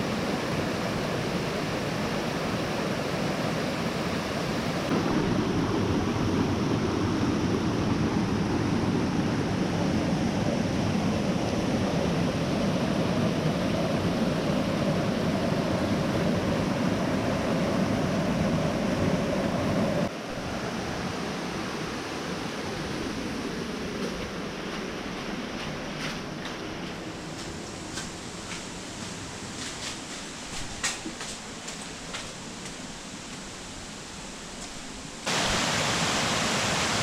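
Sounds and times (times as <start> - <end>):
waterfall rushing: 32.0 - 37.0.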